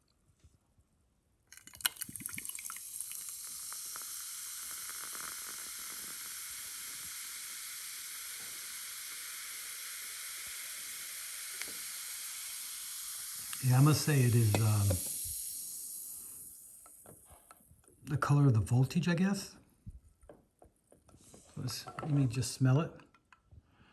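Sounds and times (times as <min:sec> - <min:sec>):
soda bubbles hissing: 0:01.5 - 0:17.5
ice clicking and crackling: 0:01.6 - 0:04.0.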